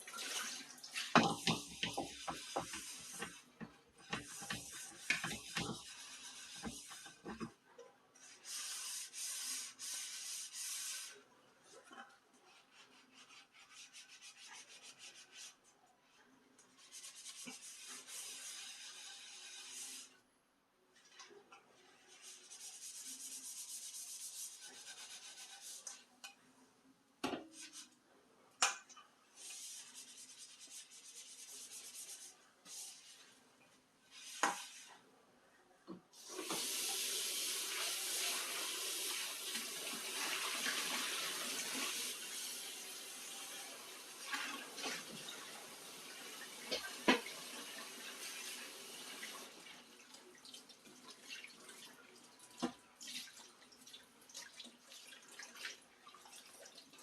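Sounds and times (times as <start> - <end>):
kitchen tap running: 0.0 - 3.4, 36.2 - 49.6
dishes clinking in sink: 1.0 - 2.8.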